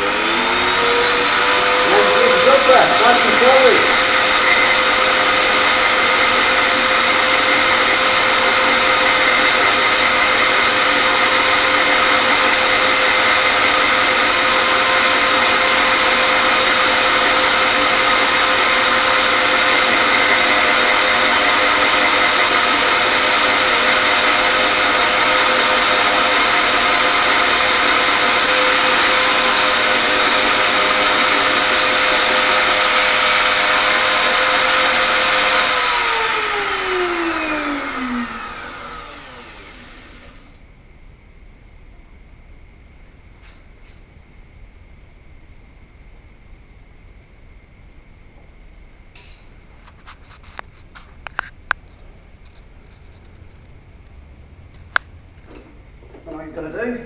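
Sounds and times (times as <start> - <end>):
router and drill press whining: 0.0 - 40.6.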